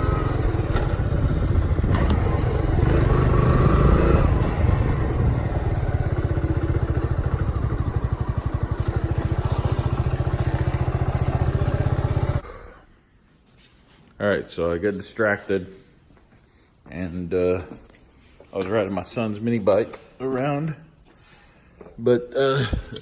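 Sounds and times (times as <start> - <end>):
motorcycle engine idling: 0.0 - 12.4.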